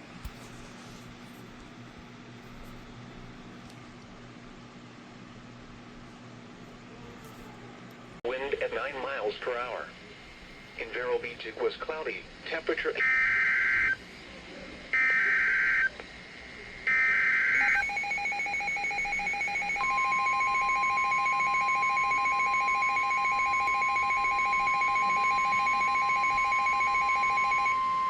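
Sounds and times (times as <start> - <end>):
steady high alarm tone: 13.0 - 14.0, 16.8 - 28.0
rapidly pulsing electronic beep: 17.5 - 28.0.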